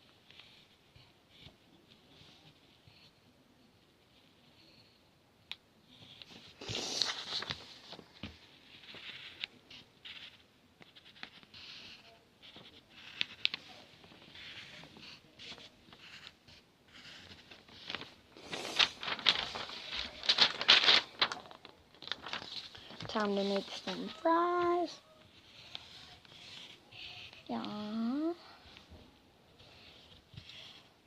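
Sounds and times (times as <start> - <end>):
paper rustling and scraping: 6.2 - 31.0.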